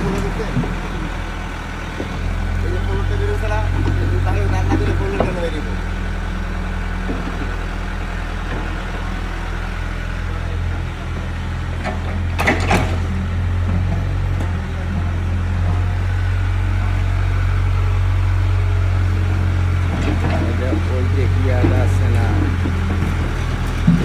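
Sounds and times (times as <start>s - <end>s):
excavator diesel engine running: 0.0s - 24.0s.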